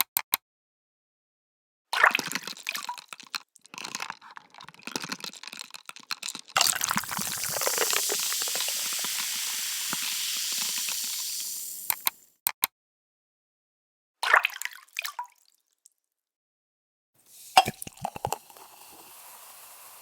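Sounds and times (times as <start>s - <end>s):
steady hiss: 6.6s - 12.2s, 17.3s - 20.0s.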